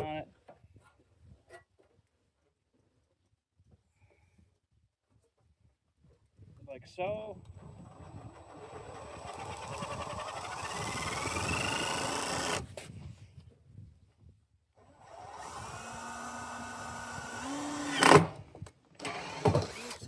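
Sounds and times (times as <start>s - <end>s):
power drill whining: 7.5s - 12.8s, 14.9s - 18.4s, 19.0s - 20.0s.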